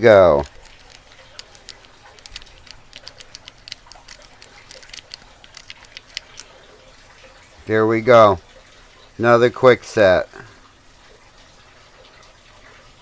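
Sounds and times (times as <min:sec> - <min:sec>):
lock pick clicking and scraping: 0:00.3 - 0:06.5.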